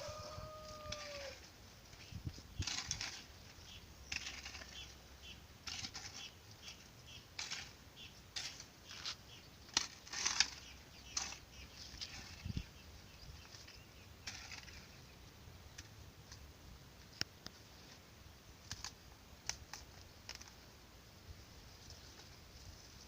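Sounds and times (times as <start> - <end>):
birds chipping: 0.0 - 15.8
rustles: 0.0 - 23.0.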